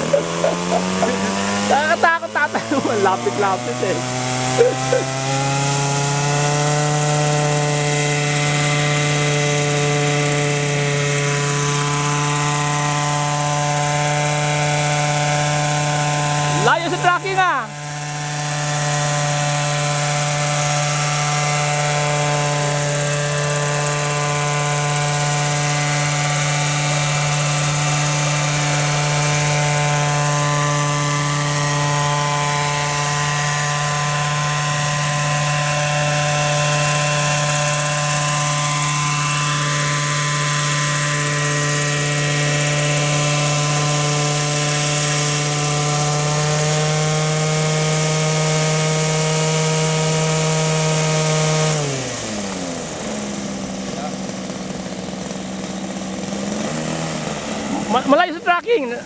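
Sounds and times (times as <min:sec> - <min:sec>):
model helicopter engine and rotor drone: 0:00.0 - 0:59.0.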